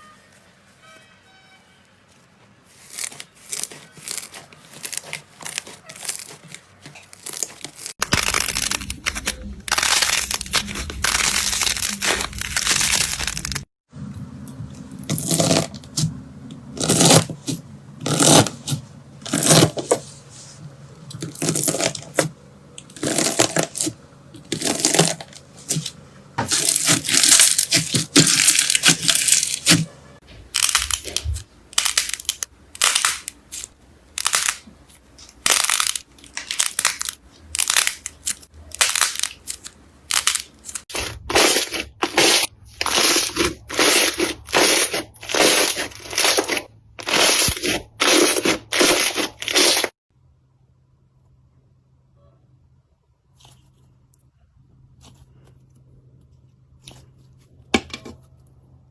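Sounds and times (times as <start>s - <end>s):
slime squelching and crackling: 2.7s - 13.7s, 21.1s - 50.0s.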